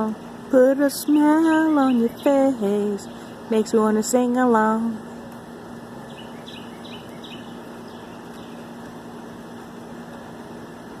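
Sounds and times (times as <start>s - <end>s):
steady low hum: 0.0s - 11.0s
songbird chirping: 1.2s - 3.4s, 5.1s - 9.0s.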